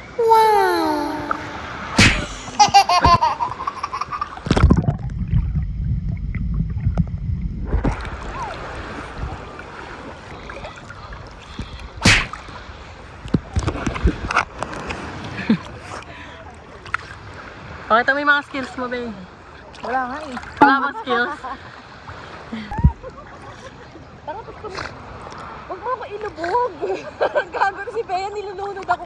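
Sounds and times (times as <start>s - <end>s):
person squealing: 0.0s - 2.7s
sea water splashing: 0.0s - 5.6s
person laughing: 0.2s - 4.2s
muffled underwater rumble: 1.3s - 12.0s.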